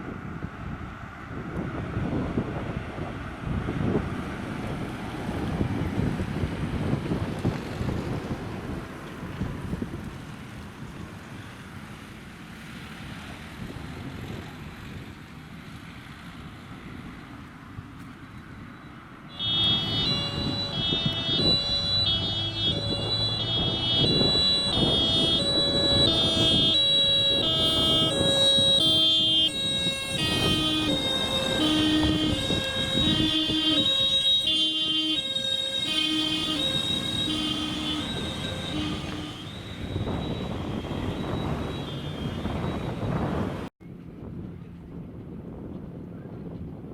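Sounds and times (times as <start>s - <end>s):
wind noise on microphone: 0.0s - 11.8s, 12.9s - 15.6s, 19.3s - 46.9s
truck engines running: 0.0s - 46.9s
fire engine two-tone sirens: 18.7s - 43.7s.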